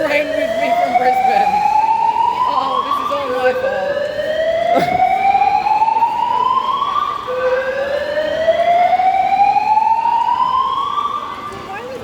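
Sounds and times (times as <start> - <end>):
whooping evacuation alarm: 0.0 - 12.0.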